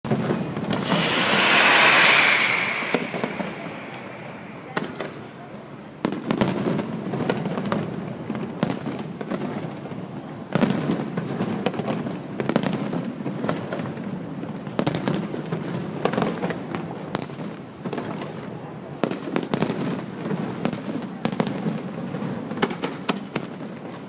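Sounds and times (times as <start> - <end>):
fireworks bangs and crackling: 0.1 - 24.0.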